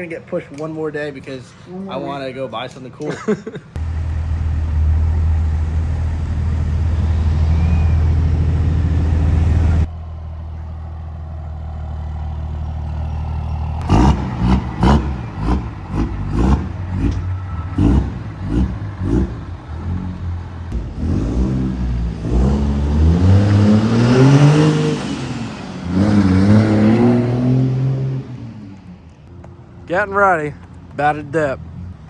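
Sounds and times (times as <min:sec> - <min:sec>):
vehicle engine running: 0:03.8 - 0:23.2.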